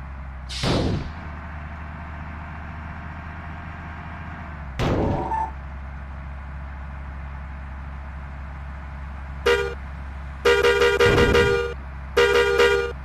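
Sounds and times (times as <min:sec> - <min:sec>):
road traffic rumble: 0:00.0 - 0:13.0.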